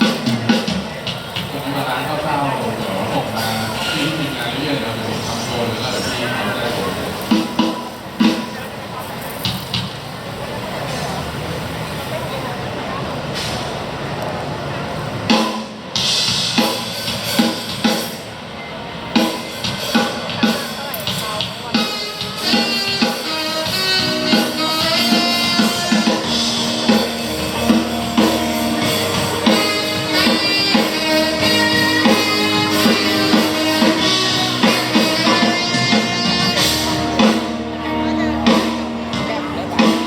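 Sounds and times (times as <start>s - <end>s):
drum kit beat: 0.0s - 2.1s, 6.6s - 10.1s, 15.3s - 18.4s, 19.1s - 40.0s
guitar: 0.0s - 9.9s, 15.3s - 40.0s
held pitched notes: 21.6s - 40.0s.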